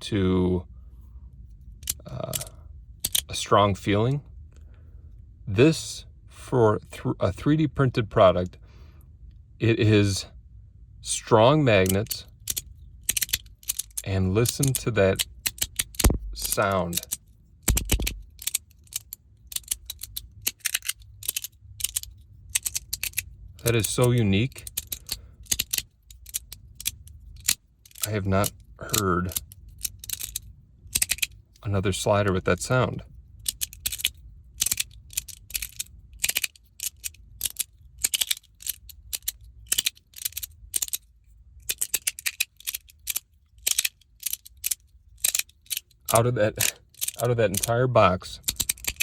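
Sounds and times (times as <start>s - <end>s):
magnetic fidget clicking: 11.9s - 31.3s, 33.4s - 41.0s, 48.4s - 49.0s.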